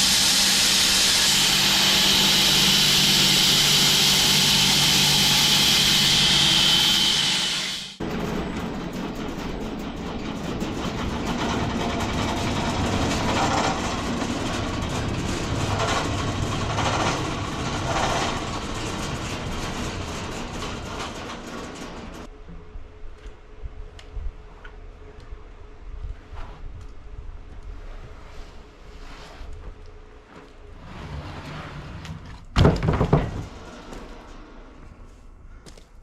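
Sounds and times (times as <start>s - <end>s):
bandsaw mill cutting log: 0.0s - 8.0s, 10.6s - 22.3s.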